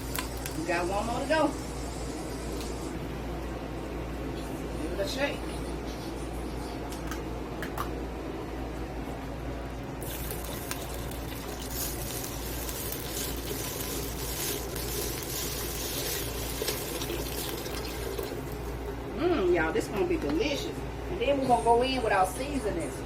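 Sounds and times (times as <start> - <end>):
juice pouring into pot: 9.7 - 19.0.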